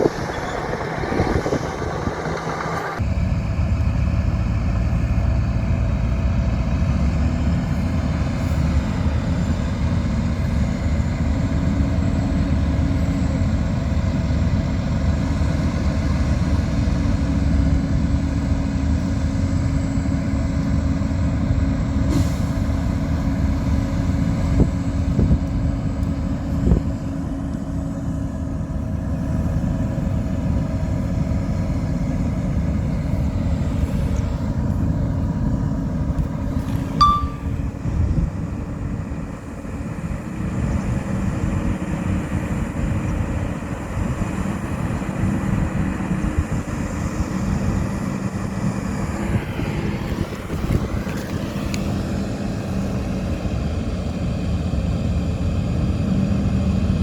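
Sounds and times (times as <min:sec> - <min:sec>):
bulldozer diesel engine: 0:00.0 - 0:57.0.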